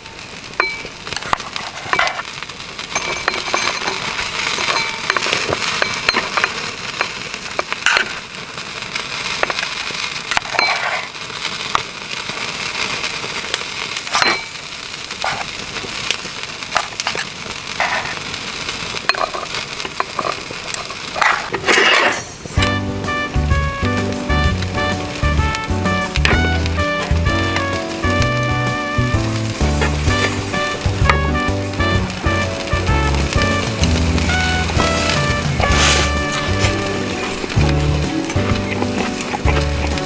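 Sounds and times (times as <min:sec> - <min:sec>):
cooking sizzle: 0:00.0 - 0:40.0
fire crackling: 0:00.0 - 0:40.0.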